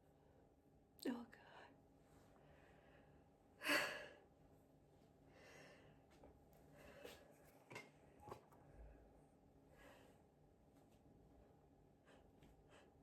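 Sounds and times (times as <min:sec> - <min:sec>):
person breathing: 0:02.3 - 0:04.2, 0:05.3 - 0:06.0.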